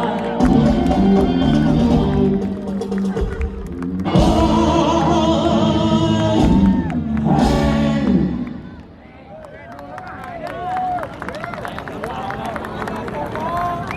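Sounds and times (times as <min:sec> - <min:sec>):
person singing: 0:00.0 - 0:02.8, 0:04.0 - 0:08.6
live band music through pa: 0:00.0 - 0:08.5.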